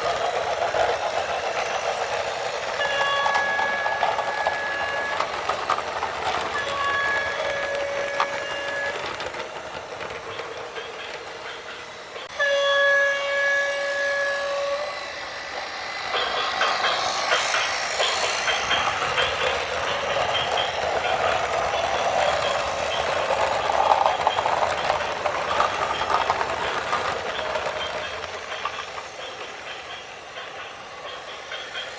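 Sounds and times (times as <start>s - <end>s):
horn blowing: 6.6s - 9.0s, 12.3s - 15.0s.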